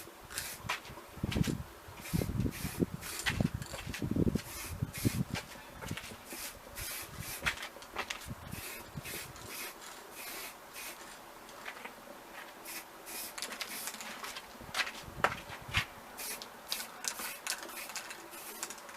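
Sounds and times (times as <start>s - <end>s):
spray paint can hissing: 0.3s - 0.6s, 2.0s - 3.4s, 4.4s - 5.3s, 6.3s - 7.5s, 8.5s - 11.0s, 12.6s - 14.0s, 16.2s - 18.9s.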